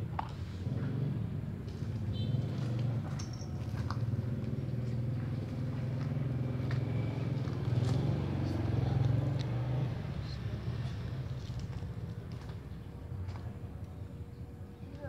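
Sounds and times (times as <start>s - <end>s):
low engine-like rumble: 0.0s - 15.0s.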